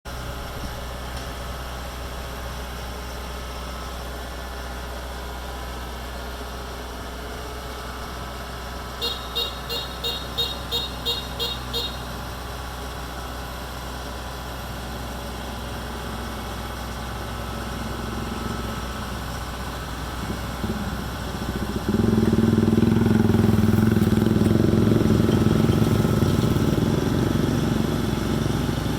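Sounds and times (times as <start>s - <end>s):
diesel engine running: 0.1s - 28.9s
quick beeper: 9.0s - 12.1s.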